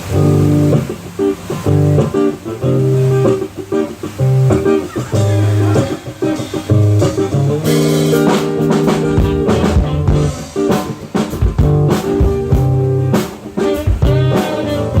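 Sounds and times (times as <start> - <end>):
guitar chords: 0.0 - 15.0
instrumental band music: 0.0 - 15.0
drum hits: 4.5 - 15.0.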